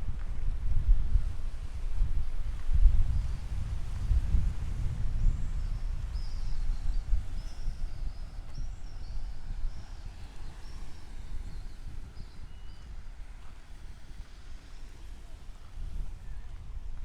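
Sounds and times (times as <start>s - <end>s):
wind rumbling on microphone: 0.0s - 17.0s.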